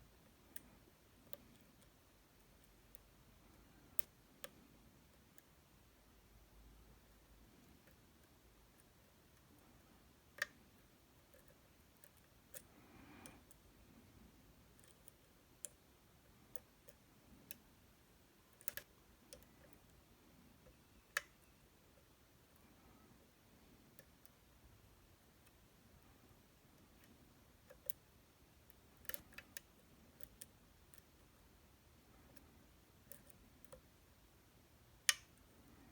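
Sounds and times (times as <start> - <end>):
lock-picking tools clicking: 18.5 - 20.0.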